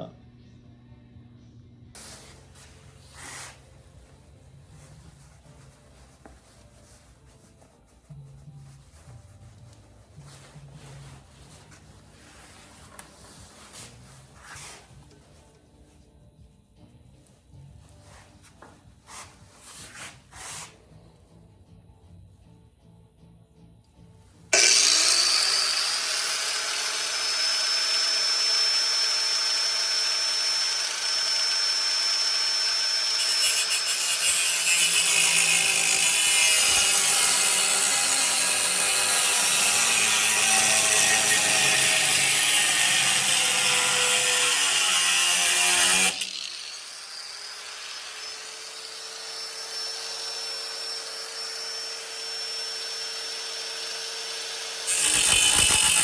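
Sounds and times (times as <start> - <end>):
power tool cutting steel sheet: 24.5 - 56.0.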